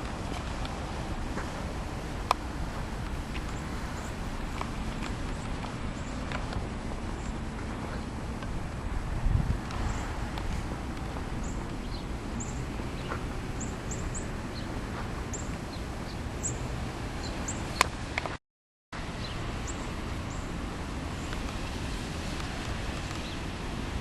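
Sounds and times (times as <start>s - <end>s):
outdoor hiss: 0.0s - 18.2s, 19.0s - 24.0s
small birds chirping: 3.3s - 8.2s, 11.4s - 16.6s, 17.2s - 17.9s, 19.2s - 20.5s, 22.9s - 23.5s.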